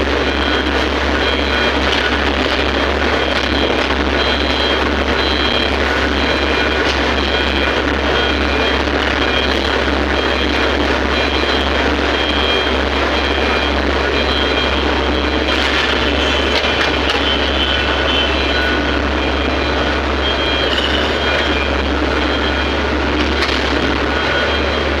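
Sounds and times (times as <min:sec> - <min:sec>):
excavator diesel engine running: 0:00.0 - 0:25.0.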